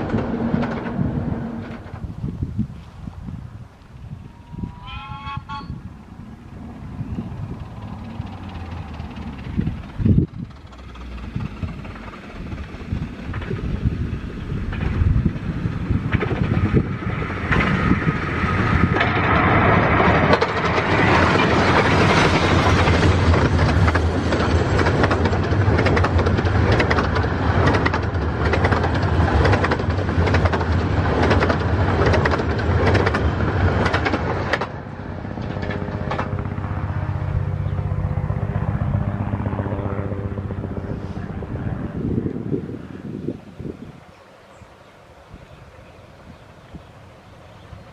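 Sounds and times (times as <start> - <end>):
steam train wheels clicking: 0.0 - 2.1, 7.4 - 36.5.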